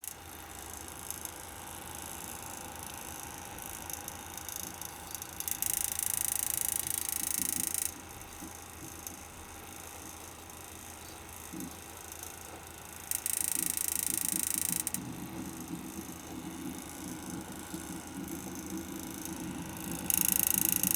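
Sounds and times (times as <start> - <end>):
liquid cooler pump hum: 0.2 - 20.9
gritty clicking hiss: 10.0 - 20.9.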